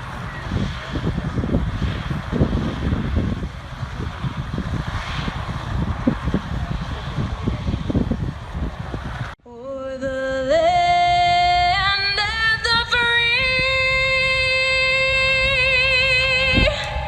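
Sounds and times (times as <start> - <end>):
outdoor wind noise: 0.0 - 17.0
woman singing over loudspeakers: 9.5 - 17.0.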